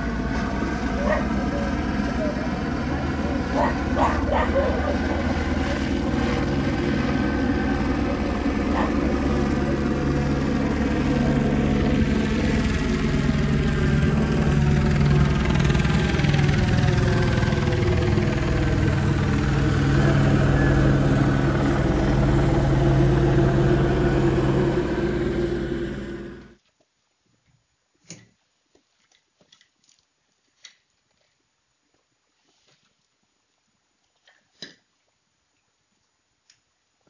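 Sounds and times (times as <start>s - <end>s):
engine droning steadily: 0.0s - 26.6s.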